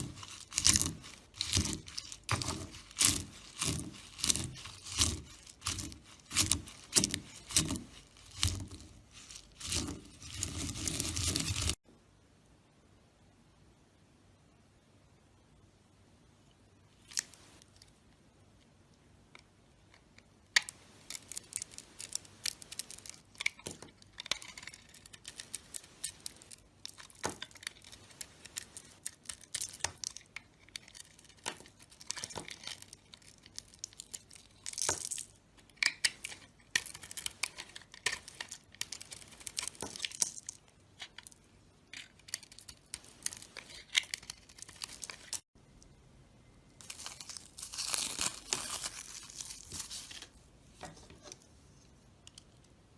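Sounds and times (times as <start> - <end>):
knife scraping dry soap: 0.0 - 11.8, 35.8 - 41.3.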